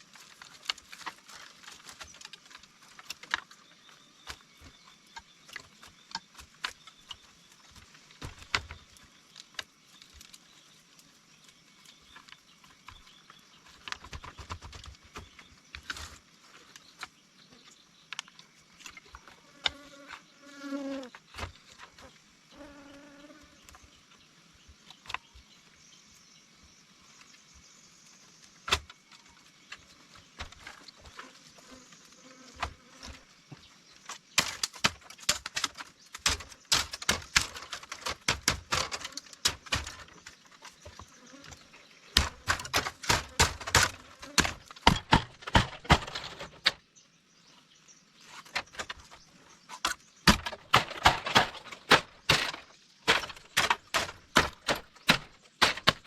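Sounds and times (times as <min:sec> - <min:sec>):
insect buzzing: 0:19.2 - 0:24.0, 0:30.7 - 0:33.6, 0:40.7 - 0:44.8
rapid sharp clicks and knocks: 0:34.4 - 0:40.2, 0:50.3 - 0:56.0.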